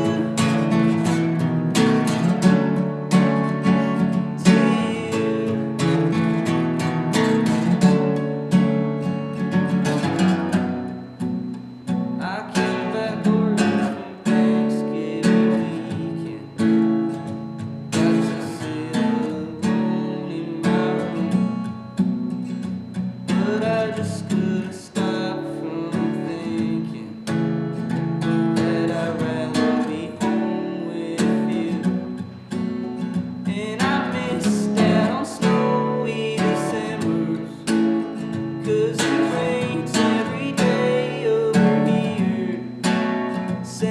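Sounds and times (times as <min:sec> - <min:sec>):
acoustic guitar strumming: 0:00.0 - 0:43.9.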